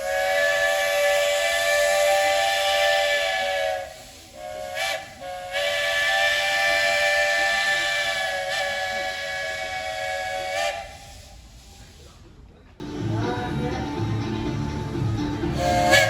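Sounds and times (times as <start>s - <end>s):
steam whistle blasts: 0.0s - 11.4s, 15.5s - 16.0s
steam hissing: 0.0s - 13.8s, 14.4s - 16.0s.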